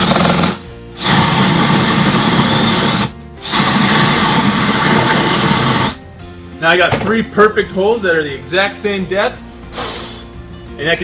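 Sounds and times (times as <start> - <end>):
power drill boring into wood: 0.0 - 6.0.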